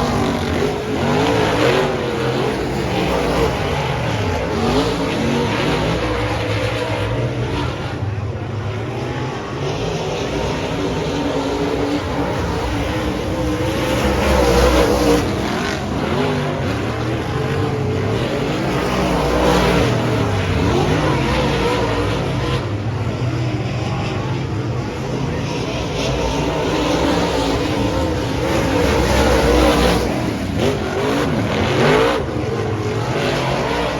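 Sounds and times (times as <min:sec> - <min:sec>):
race car engines passing: 0:00.0 - 0:33.9.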